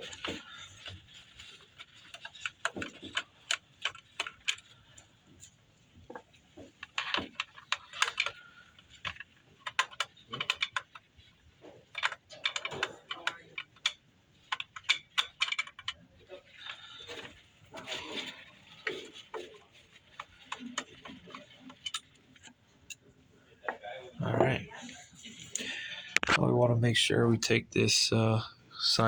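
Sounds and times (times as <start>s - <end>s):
screwdriver and metal parts clicking: 6.8s - 11.0s, 11.8s - 23.0s.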